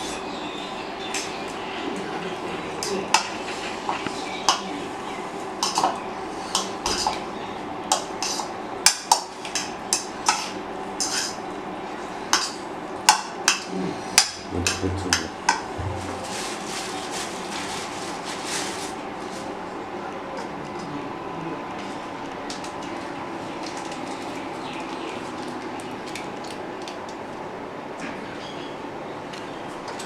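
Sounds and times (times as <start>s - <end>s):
steady background hum: 0.0s - 30.0s
dishes knocking and clinking: 14.2s - 16.5s.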